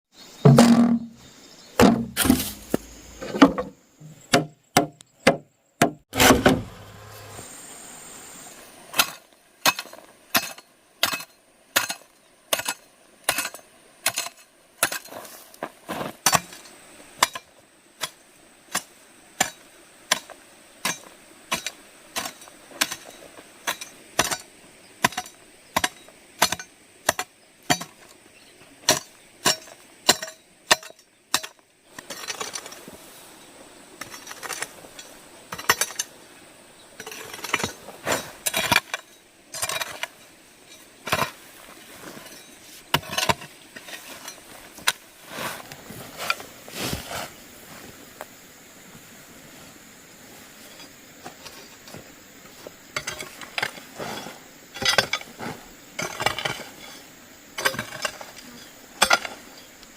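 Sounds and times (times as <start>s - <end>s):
hand tool striking wood: 0.4s - 1.2s, 1.8s - 6.8s.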